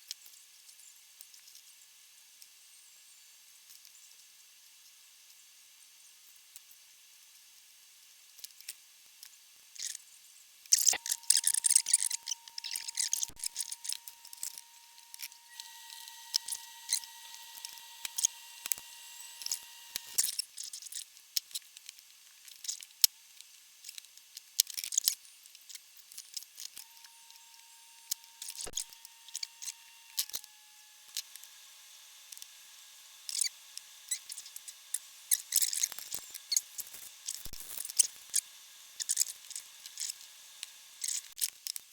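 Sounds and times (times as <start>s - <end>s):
faint high whine: 10.9s - 20.3s, 26.8s - 41.4s
hand tools clicking and snipping: 33.2s - 41.8s.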